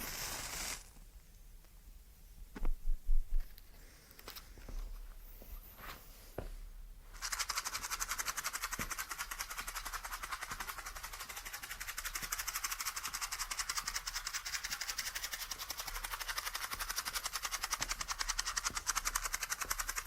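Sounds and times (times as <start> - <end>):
matches rattling in shaken matchbox: 7.1 - 20.0.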